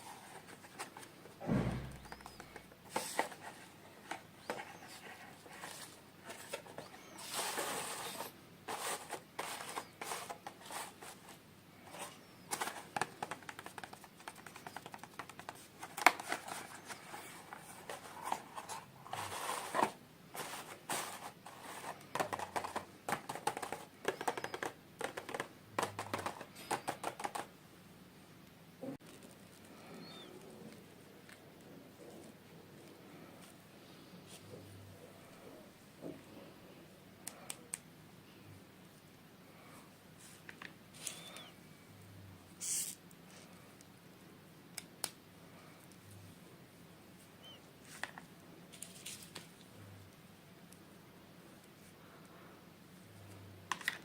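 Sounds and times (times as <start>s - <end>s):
packaging rustling and crinkling: 1.8s - 27.4s.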